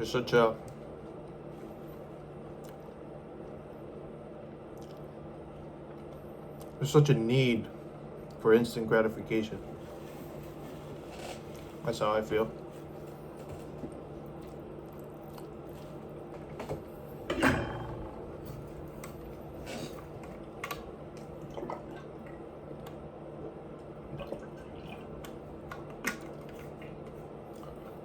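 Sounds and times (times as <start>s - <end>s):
person chewing with mouth clicks: 4.7s - 5.1s, 14.3s - 16.0s.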